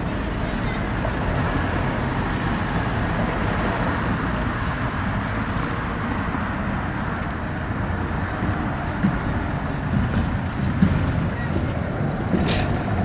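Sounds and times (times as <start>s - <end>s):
road traffic rumble: 0.0s - 13.0s.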